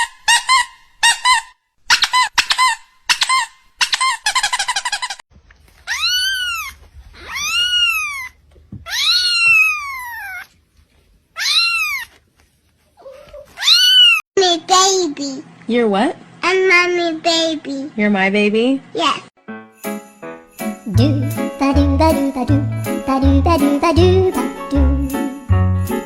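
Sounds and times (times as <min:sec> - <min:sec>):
kitten squeaking and chirping: 0:05.8 - 0:10.6, 0:11.4 - 0:12.2, 0:13.0 - 0:14.2
kitten meowing: 0:05.9 - 0:10.5, 0:11.4 - 0:12.2, 0:13.2 - 0:14.2.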